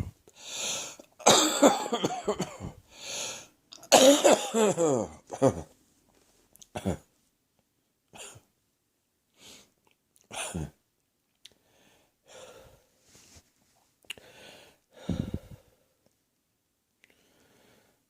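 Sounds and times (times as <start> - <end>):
person breathing: 0.0 - 1.1, 2.6 - 3.6, 9.4 - 9.8, 11.5 - 13.4, 14.1 - 16.0, 17.1 - 18.0
person coughing: 1.2 - 2.8, 3.8 - 5.7, 6.7 - 7.1, 10.3 - 10.8.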